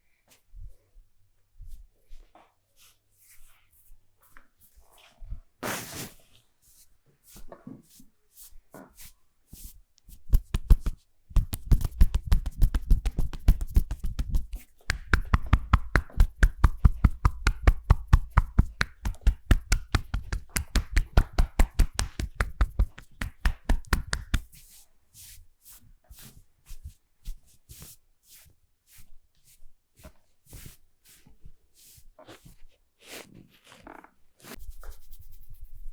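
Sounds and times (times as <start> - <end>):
light taps and rubs: 10.0 - 24.7, 32.0 - 35.9
hands striking body in massage: 10.3 - 24.6.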